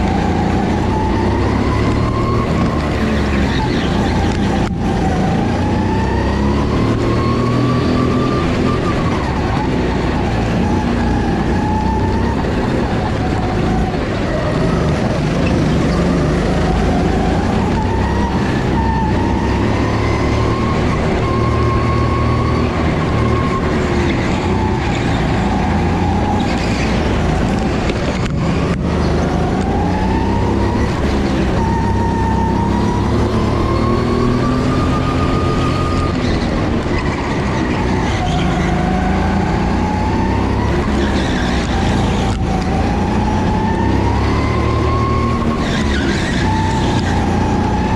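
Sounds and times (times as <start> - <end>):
go-kart engine running hard: 0.0 - 47.9.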